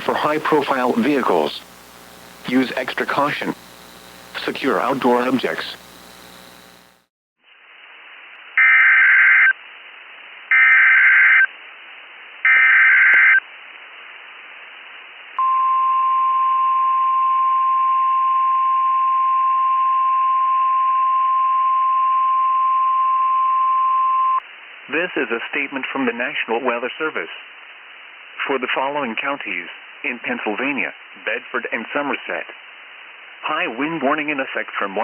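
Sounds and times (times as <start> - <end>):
digital data bursts: 0.0 - 7.0
radio hiss: 0.0 - 10.7, 24.4 - 35.0.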